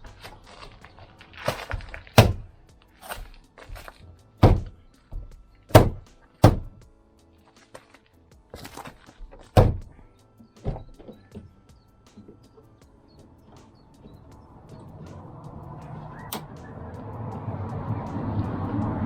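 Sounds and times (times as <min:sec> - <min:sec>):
loud thumps on car door trim: 0:01.5 - 0:02.5, 0:04.4 - 0:06.8, 0:08.6 - 0:10.0.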